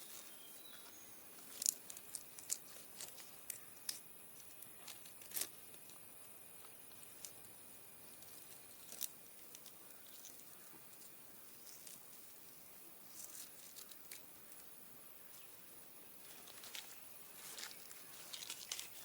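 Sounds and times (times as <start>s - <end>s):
fibre and sticks rustling: 1.4s - 6.0s, 8.1s - 12.2s, 16.2s - 19.0s.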